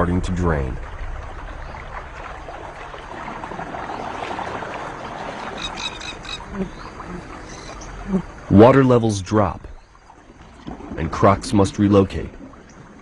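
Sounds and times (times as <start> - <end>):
water washing: 0.0 - 13.0
high animal calls: 5.4 - 8.4.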